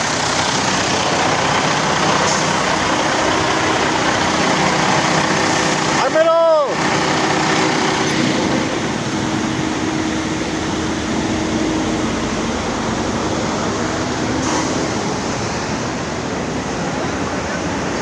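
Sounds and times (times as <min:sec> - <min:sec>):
truck engine running: 0:00.0 - 0:18.0
steady hum: 0:06.8 - 0:18.0.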